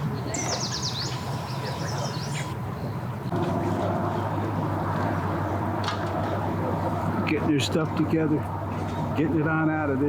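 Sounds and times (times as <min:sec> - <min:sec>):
engine hum: 0:00.0 - 0:10.0
low engine rumble: 0:00.0 - 0:10.0
bird singing high notes: 0:00.3 - 0:02.5.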